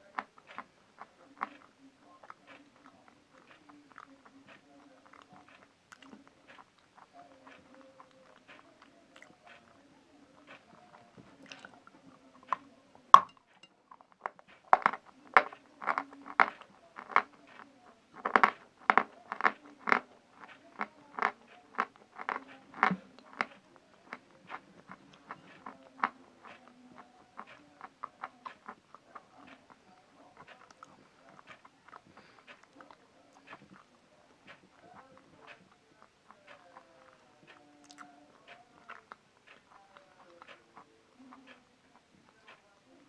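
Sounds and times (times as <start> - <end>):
chewing crunches: 0.1 - 9.8, 14.3 - 42.6.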